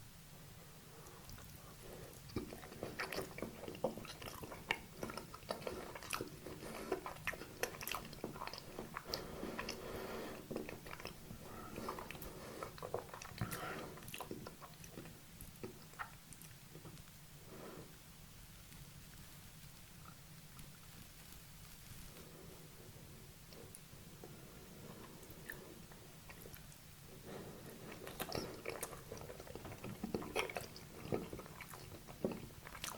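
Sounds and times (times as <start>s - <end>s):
biting and chewing: 1.3s - 17.1s, 26.2s - 32.9s
wet mouth clicks: 2.2s - 9.8s, 10.4s - 17.2s, 27.8s - 32.9s.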